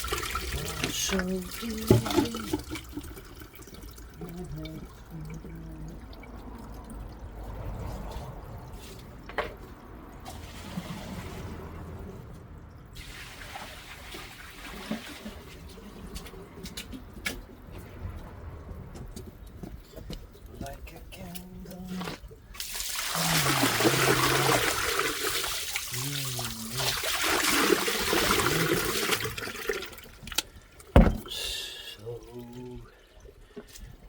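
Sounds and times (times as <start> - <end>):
water trickling through drain: 0.0 - 34.0
sharp knocks: 31.0 - 31.3.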